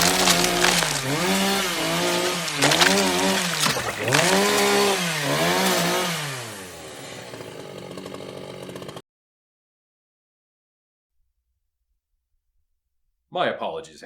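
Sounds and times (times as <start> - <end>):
chainsaw revving and idling: 0.0 - 9.0.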